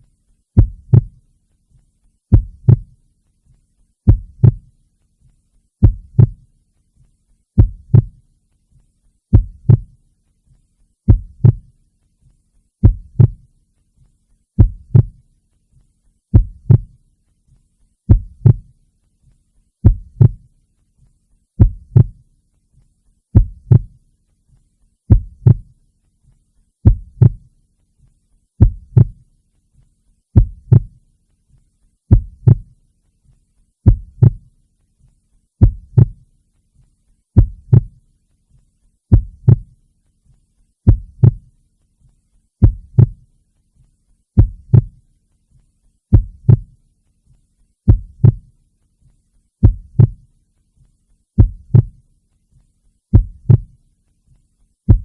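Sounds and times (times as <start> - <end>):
heartbeat thumping: 0.6 - 1.2, 2.3 - 3.0, 4.0 - 4.8, 5.8 - 6.5, 7.6 - 8.2, 9.3 - 10.0, 11.1 - 11.7, 12.8 - 13.5, 14.6 - 15.2, 16.3 - 17.0, 18.1 - 18.7, 19.8 - 20.5, 21.6 - 22.2, 23.3 - 24.0, 25.1 - 25.8, 26.8 - 27.5, 28.6 - 29.2, 30.4 - 31.0, 32.1 - 32.8, 33.8 - 34.5, 35.6 - 36.3, 37.4 - 38.0, 39.1 - 39.8, 40.8 - 41.5, 42.6 - 43.3, 44.4 - 45.0, 46.1 - 46.8, 47.9 - 48.5, 49.6 - 50.3, 51.4 - 52.0, 53.1 - 53.8.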